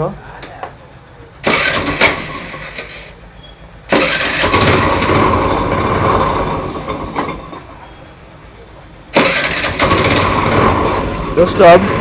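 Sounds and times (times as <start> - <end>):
scooter engine revving: 1.4 - 3.2, 3.9 - 7.4, 9.2 - 12.0.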